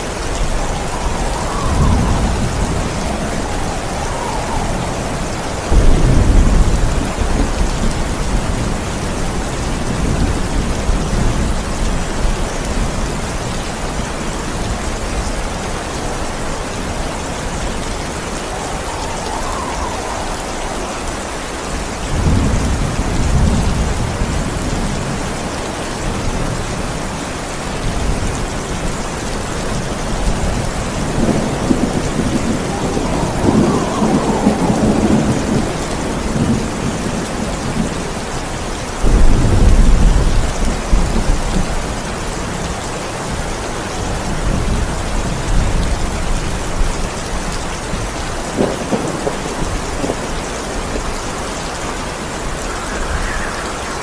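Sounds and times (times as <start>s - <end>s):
rolling thunder: 0.0s - 13.6s, 14.2s - 27.2s, 27.8s - 38.4s, 39.0s - 42.7s, 43.3s - 54.0s
heavy rain: 0.0s - 54.0s
thunder crack: 0.4s - 8.0s, 31.1s - 36.9s.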